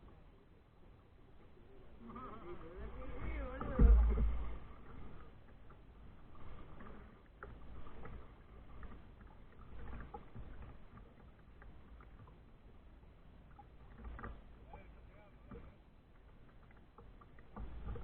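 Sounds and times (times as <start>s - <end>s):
paddle water swishing: 0.0s - 18.0s
low rumble: 1.4s - 5.3s.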